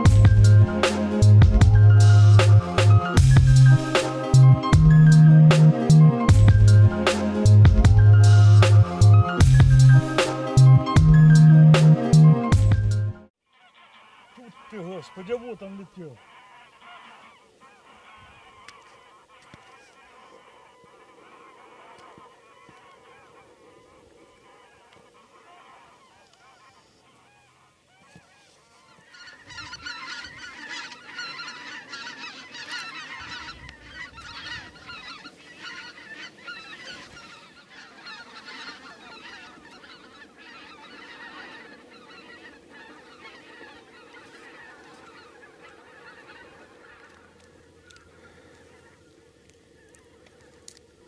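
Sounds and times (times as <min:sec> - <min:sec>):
geese honking: 0:00.0 - 0:51.0.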